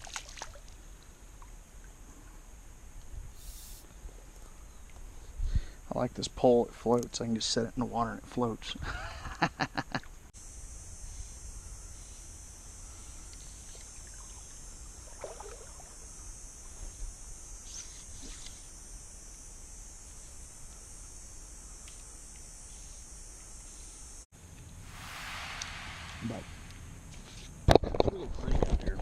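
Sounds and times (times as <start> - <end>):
insects chorus: 0.1 - 24.3
low rumble: 24.8 - 27.7.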